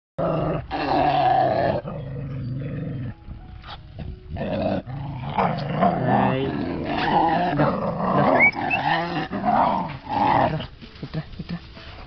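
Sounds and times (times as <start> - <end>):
dog growling: 0.2 - 3.2, 4.4 - 10.7.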